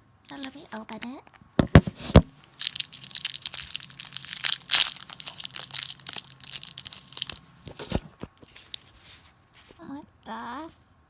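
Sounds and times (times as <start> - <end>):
plastic wrapper crinkling: 0.2 - 9.8.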